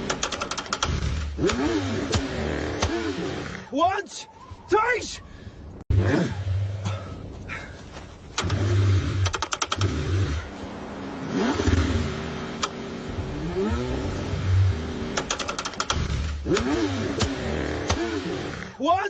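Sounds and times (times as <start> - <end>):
starter clicking: 0.0 - 3.0, 8.3 - 10.1, 15.1 - 18.1
car engine cranking: 0.0 - 3.7, 8.3 - 18.8.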